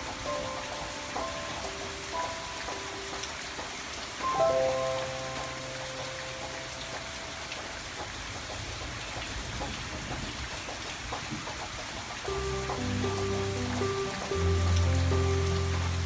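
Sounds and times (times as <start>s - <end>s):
piano notes: 0.0s - 8.2s, 12.2s - 16.0s
steady rain: 0.0s - 16.0s.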